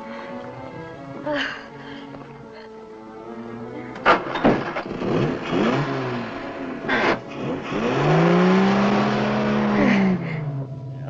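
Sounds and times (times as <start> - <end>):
car engine revving: 3.9 - 11.0.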